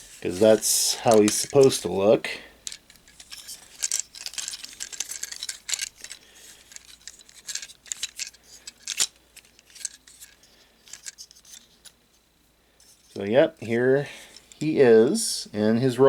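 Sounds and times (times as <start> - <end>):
plastic toy parts clicking: 0.3 - 1.9, 2.6 - 12.0.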